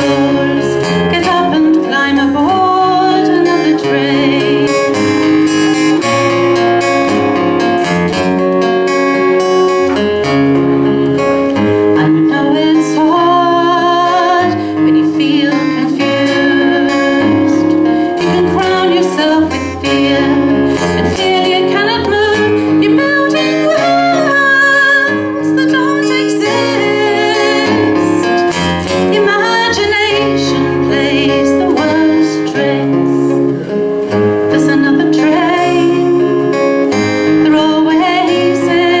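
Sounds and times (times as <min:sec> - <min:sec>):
woman singing: 0:00.0 - 0:06.2, 0:11.6 - 0:39.0
strummed acoustic guitar: 0:00.0 - 0:39.0.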